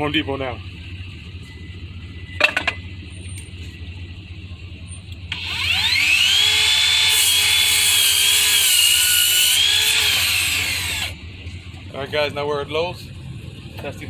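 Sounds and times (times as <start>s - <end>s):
miter saw whine: 4.9s - 11.7s.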